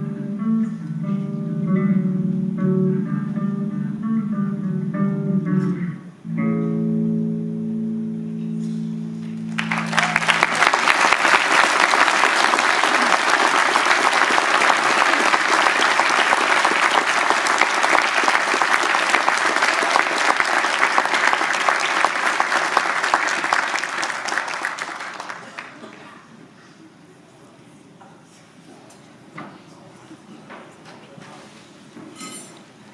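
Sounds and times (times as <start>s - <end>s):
guitar playing: 0.0s - 10.9s
audience applauding: 9.2s - 26.1s.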